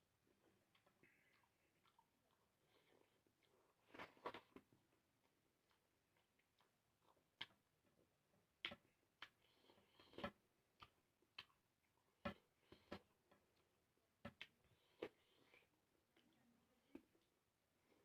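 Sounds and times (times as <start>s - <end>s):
chewing clicks and smacks: 4.3s - 7.7s, 10.1s - 12.0s.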